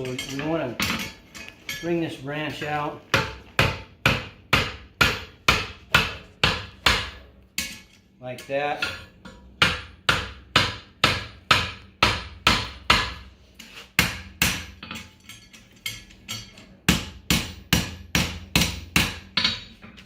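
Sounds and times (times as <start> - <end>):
hammer ringing on horseshoe: 0.0 - 2.2, 14.0 - 19.8.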